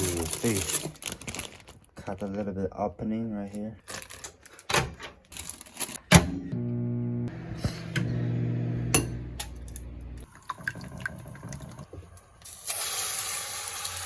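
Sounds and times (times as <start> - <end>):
water running from kitchen tap: 9.5 - 14.0.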